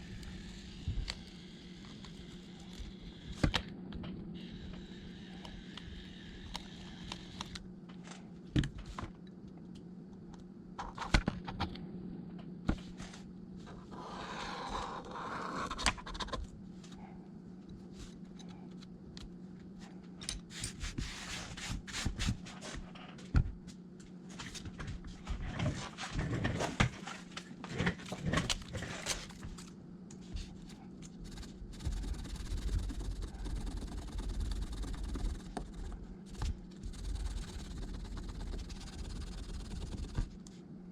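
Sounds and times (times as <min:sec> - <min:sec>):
steady low hum: 0:00.0 - 0:40.9.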